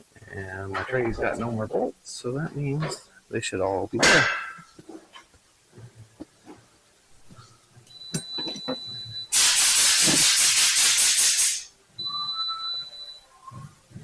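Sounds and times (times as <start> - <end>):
pressurised gas hissing: 9.3 - 11.7.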